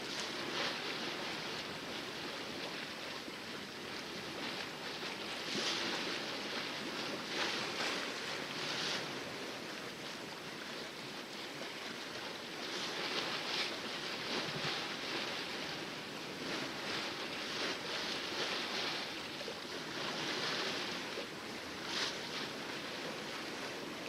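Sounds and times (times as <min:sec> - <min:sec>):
water splashing along a hull: 0:00.0 - 0:24.0.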